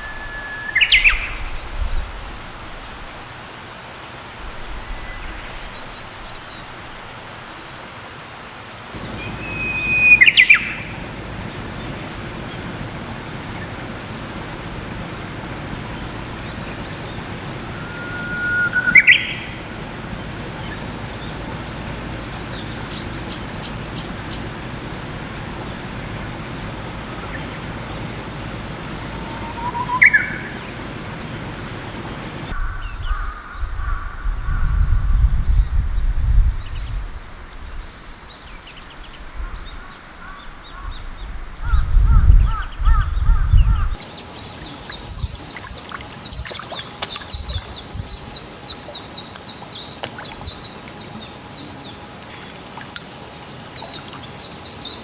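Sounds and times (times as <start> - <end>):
bird singing whistle and flourish: 9.0 - 32.5.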